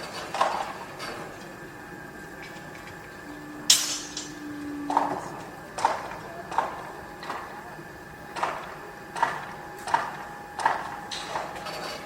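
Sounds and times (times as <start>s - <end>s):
machinery hum: 0.0s - 12.0s
faint held tones: 3.0s - 5.8s.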